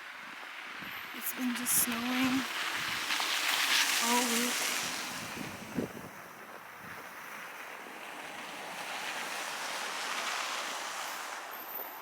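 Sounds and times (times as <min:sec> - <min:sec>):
storm wind buffeting microphone: 0:01.5 - 0:10.1.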